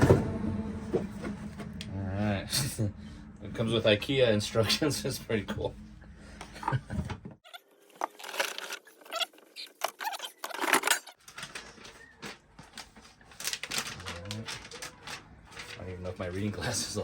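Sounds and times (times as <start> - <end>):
paper rustling and crinkling: 9.8 - 17.0.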